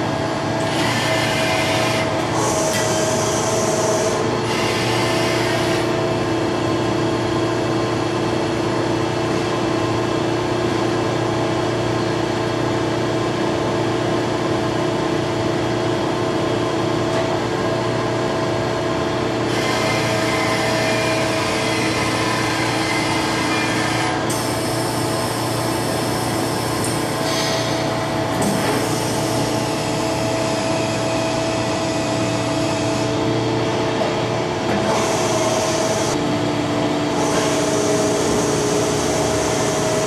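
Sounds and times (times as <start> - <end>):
machine hum with fixed tones: 0.0 - 40.0.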